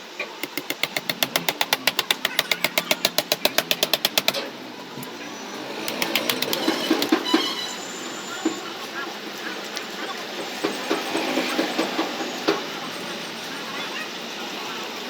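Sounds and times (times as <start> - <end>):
rapid mechanical clicking: 0.2 - 7.4.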